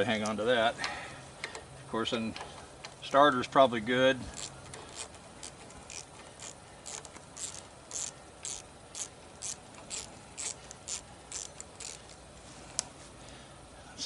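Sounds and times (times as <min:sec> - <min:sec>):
socket ratchet clicking: 0:04.4 - 0:12.2.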